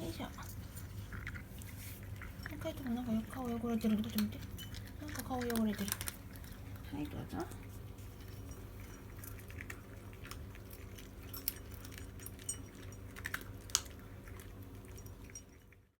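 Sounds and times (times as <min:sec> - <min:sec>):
cats chewing wet food: 0:00.0 - 0:16.0.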